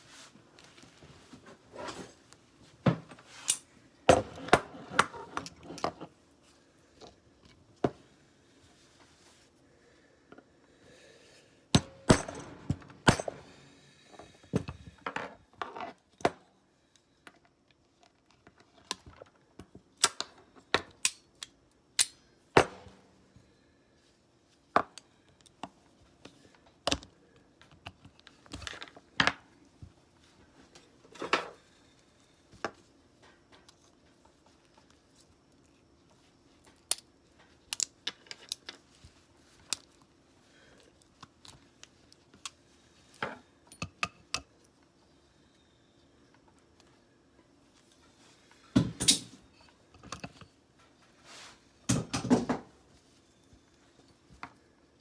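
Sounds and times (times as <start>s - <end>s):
metal parts clicking and knocking: 48.9s - 49.3s.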